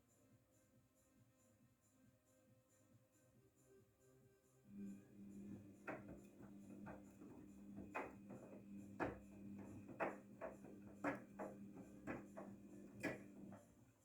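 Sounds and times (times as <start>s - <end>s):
washing machine motor hum: 4.7s - 14.0s
soft knock of turning drum: 5.8s - 13.7s.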